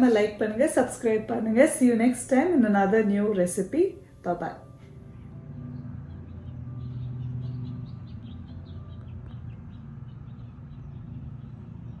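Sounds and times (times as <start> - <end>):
steady low hum: 0.0 - 12.0
bird chirping: 5.6 - 12.0.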